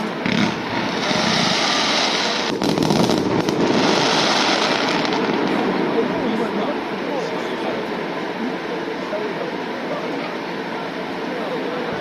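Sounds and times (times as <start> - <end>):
fireworks crackling: 0.0 - 7.5.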